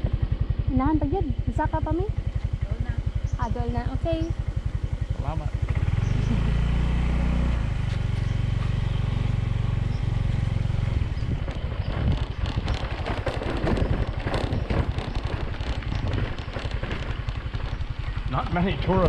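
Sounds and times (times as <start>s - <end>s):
motorbike engine running: 0.0s - 19.0s
knocks and rattles: 11.2s - 19.0s.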